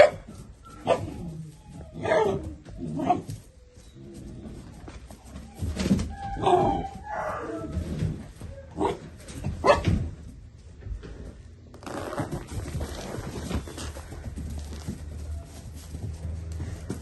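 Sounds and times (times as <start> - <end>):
puppies barking and yelping: 0.0 - 7.8.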